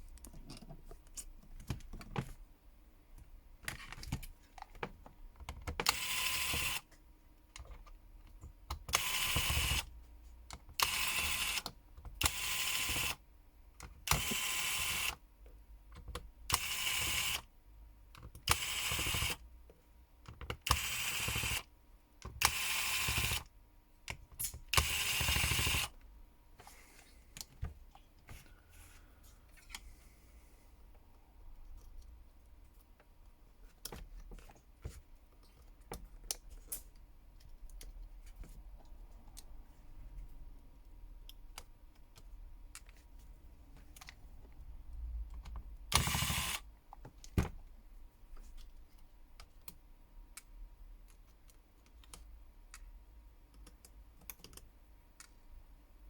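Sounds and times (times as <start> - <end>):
electric screwdriver whirring: 5.9 - 6.9, 8.9 - 9.9, 10.8 - 13.2, 14.1 - 15.2, 16.6 - 17.5, 18.5 - 19.4, 20.6 - 21.7, 22.4 - 23.5, 24.8 - 25.9, 45.9 - 46.6.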